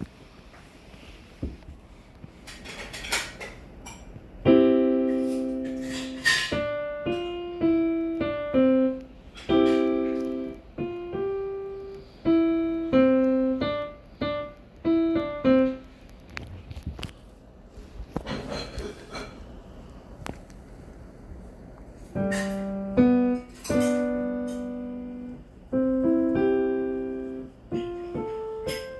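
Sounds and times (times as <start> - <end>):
piano playing: 4.4 - 15.9, 22.1 - 28.9.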